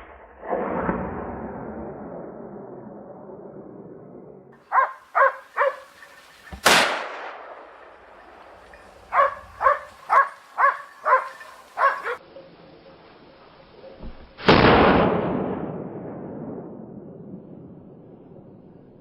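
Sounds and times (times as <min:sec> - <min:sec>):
dog barking: 0:04.6 - 0:06.0, 0:09.1 - 0:12.2
gunshot with echo: 0:06.5 - 0:08.2, 0:14.4 - 0:16.8.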